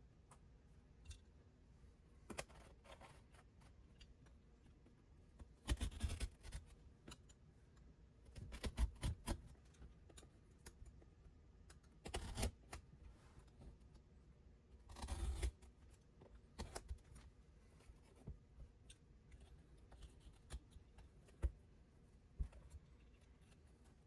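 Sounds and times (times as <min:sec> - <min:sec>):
carpet cutting or scraping: 0:14.9 - 0:15.6.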